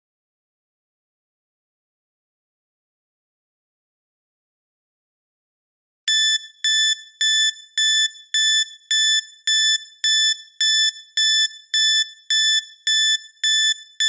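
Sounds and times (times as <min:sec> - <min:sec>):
timer alarm beeping: 0:06.1 - 0:14.0.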